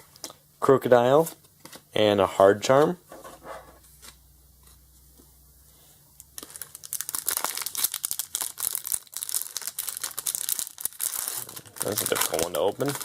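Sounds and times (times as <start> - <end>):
foil wrapper tearing and crinkling: 6.3 - 13.0.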